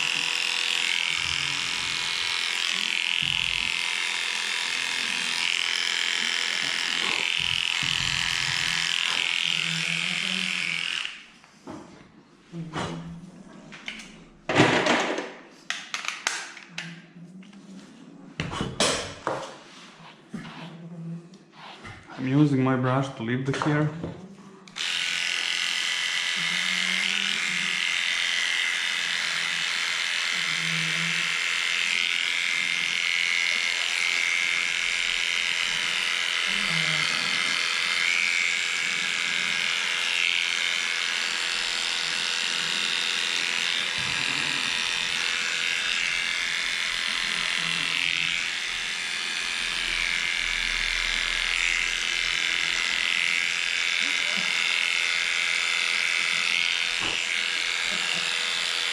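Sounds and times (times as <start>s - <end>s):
electric clippers buzzing: 0.0s - 11.3s, 24.7s - 58.9s.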